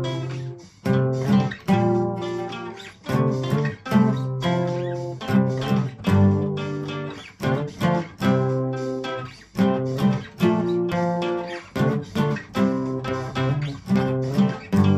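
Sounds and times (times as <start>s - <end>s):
acoustic guitar strumming chords: 0.0s - 14.9s.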